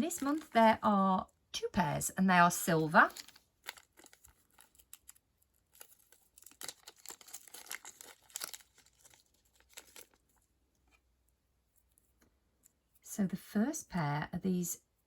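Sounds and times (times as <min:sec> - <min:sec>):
packaging crinkling: 0:03.0 - 0:11.0.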